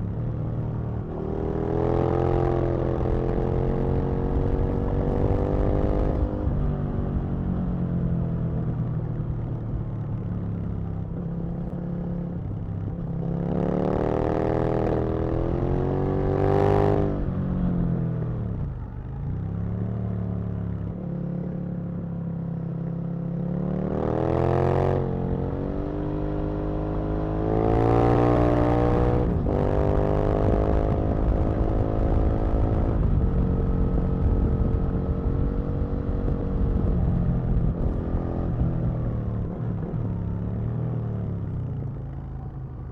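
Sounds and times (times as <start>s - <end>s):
motorcycle engine revving: 10.5s - 42.9s.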